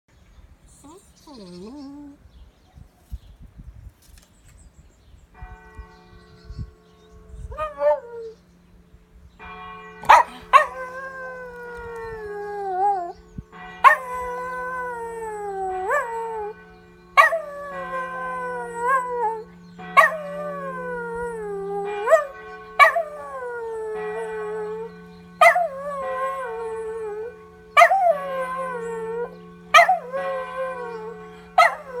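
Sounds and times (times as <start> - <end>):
church bells ringing: 5.3 - 32.0
dog howling: 10.0 - 13.2, 13.8 - 16.6, 17.2 - 32.0.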